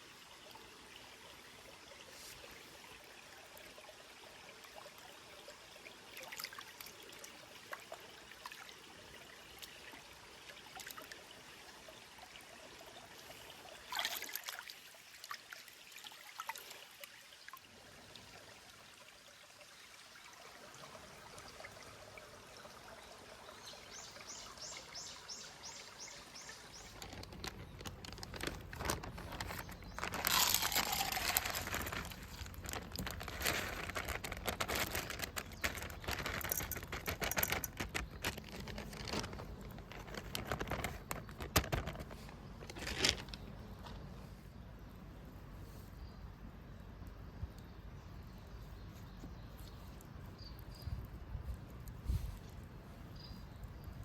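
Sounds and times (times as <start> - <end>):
loud rustling and crackling: 26.8 - 43.4.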